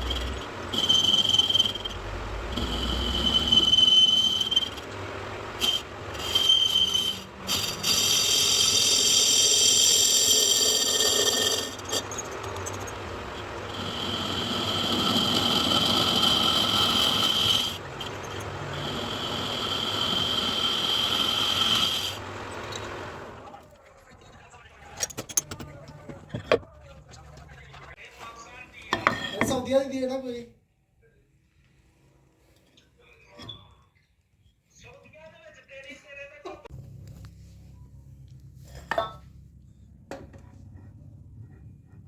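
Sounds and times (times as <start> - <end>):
rough metal screech: 0.0 - 23.4
lathe cutting tool squealing: 0.0 - 23.5.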